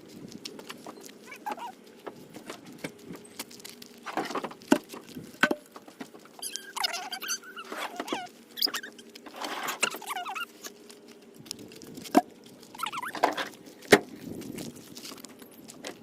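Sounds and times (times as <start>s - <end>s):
rummaging through clutter: 0.0s - 16.0s
short squeaks: 6.3s - 10.7s, 12.7s - 13.5s.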